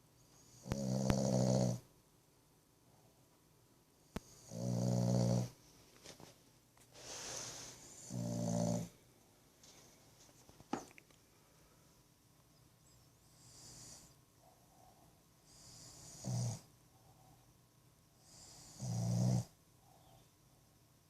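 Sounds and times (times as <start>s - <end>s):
pet snoring: 0.3s - 1.9s, 4.2s - 5.6s, 7.0s - 9.0s, 13.3s - 14.2s, 15.5s - 16.7s, 18.2s - 19.6s
soft breathy exhale: 6.9s - 7.9s.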